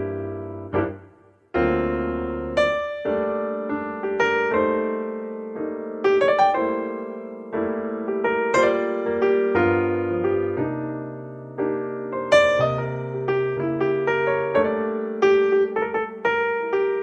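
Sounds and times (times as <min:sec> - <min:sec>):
slow calm piano music: 0:00.0 - 0:17.0.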